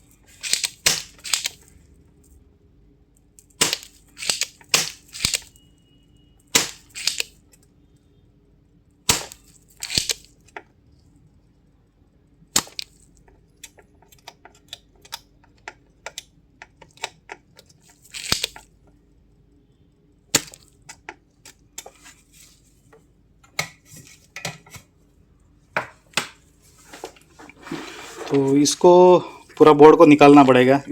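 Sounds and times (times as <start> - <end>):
tools clicking on circuit board: 0.4 - 1.6, 3.4 - 5.6, 6.5 - 7.4, 9.1 - 10.3, 13.6 - 18.6.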